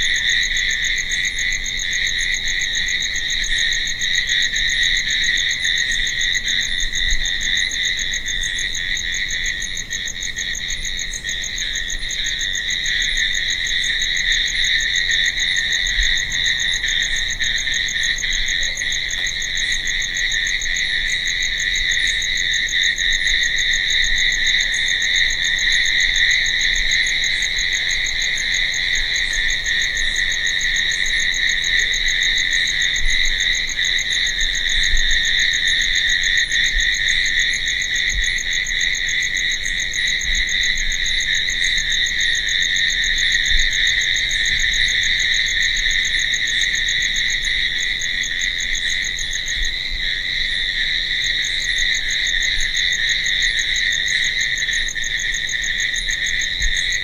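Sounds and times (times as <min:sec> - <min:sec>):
crickets chirping: 0:00.0 - 0:57.0.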